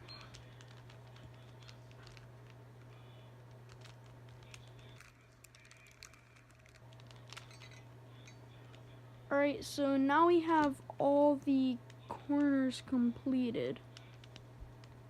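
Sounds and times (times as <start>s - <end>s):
puzzle cube plastic clicks: 0.1s - 7.8s, 13.9s - 15.0s.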